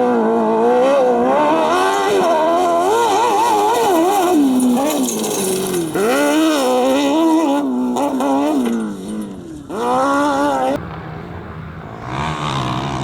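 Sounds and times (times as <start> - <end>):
engine revving hard: 0.0 - 10.8, 11.9 - 13.0.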